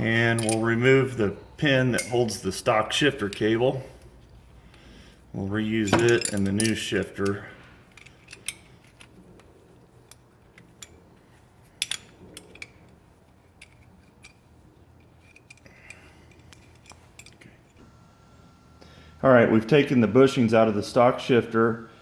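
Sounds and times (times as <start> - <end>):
clinks of small metal parts: 0.0 - 0.8, 1.9 - 2.6, 5.7 - 17.8.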